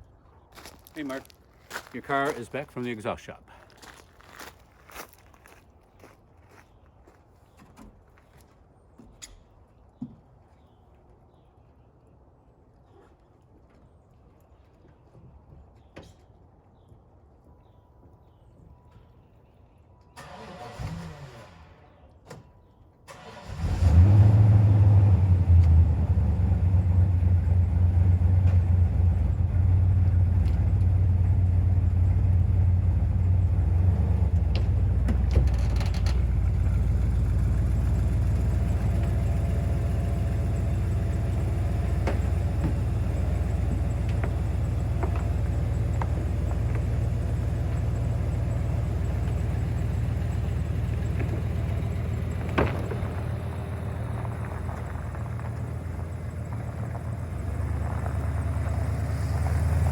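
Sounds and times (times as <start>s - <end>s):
car engine cranking on starter: 20.2s - 22.0s, 23.1s - 25.9s
car engine idling: 25.4s - 59.9s.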